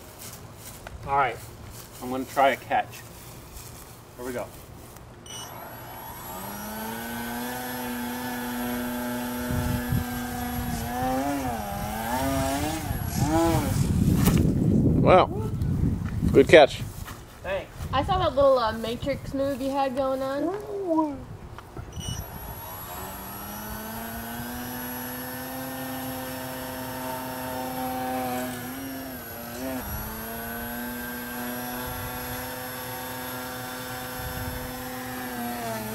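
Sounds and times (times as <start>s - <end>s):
model airplane motor whining: 5.3s - 14.1s, 22.0s - 35.9s.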